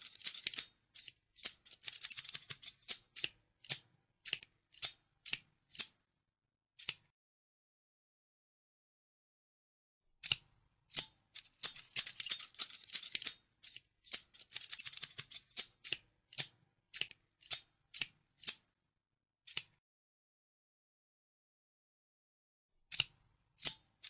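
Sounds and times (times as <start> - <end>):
metal scissors snipping: 0.0 - 6.0, 6.8 - 7.1, 10.2 - 18.6, 19.5 - 19.8, 22.9 - 24.0.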